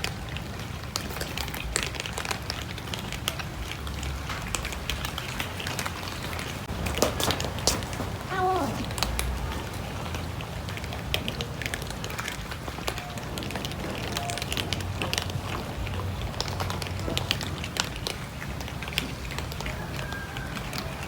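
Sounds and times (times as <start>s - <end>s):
cats chewing food: 0.0s - 21.0s
cat cry: 8.2s - 9.2s.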